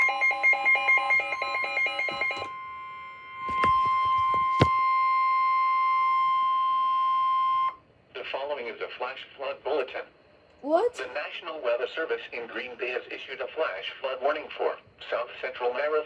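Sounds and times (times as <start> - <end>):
steady alarm tone: 0.0 - 4.6.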